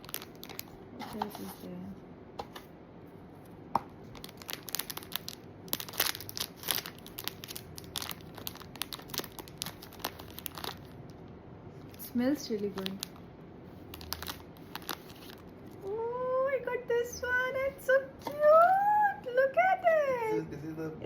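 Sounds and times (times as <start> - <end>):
packaging tearing and crinkling: 0.0 - 1.5, 4.1 - 11.0, 12.6 - 13.2, 13.8 - 15.8.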